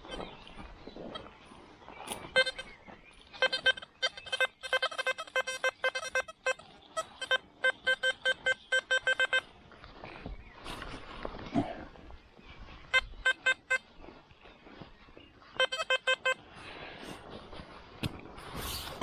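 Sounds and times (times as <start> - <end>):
metal detector short beeps: 2.3 - 2.7, 3.3 - 9.5, 13.0 - 13.8, 15.6 - 16.4.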